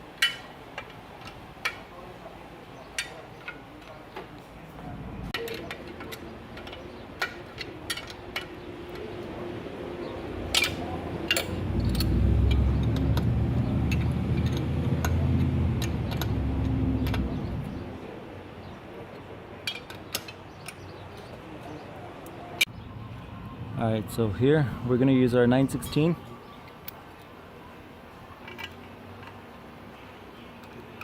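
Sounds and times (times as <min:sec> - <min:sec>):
tools clinking on metal: 0:00.2 - 0:01.9, 0:05.4 - 0:09.1, 0:10.5 - 0:13.3, 0:13.9 - 0:17.4
low rumble: 0:11.0 - 0:18.0.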